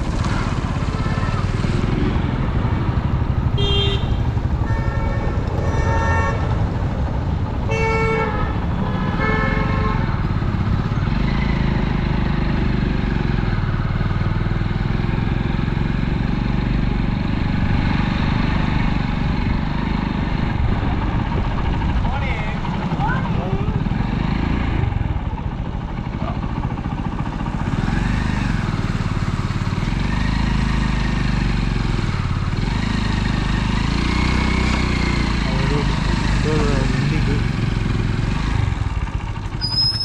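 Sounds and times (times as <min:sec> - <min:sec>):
road traffic: 0:00.0 - 0:40.0
vehicle horn honks: 0:03.6 - 0:06.6, 0:07.7 - 0:10.2.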